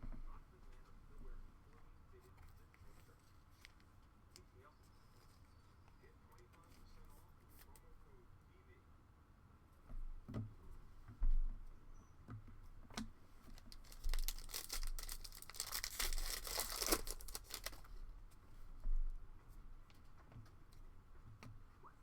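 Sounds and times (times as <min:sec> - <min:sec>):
wrapper tearing and crinkling: 0:13.5 - 0:17.9.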